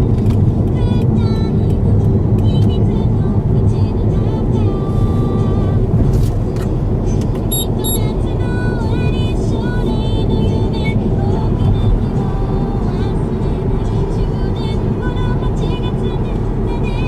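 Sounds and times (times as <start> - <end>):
car road and engine rumble: 0.0 - 17.0.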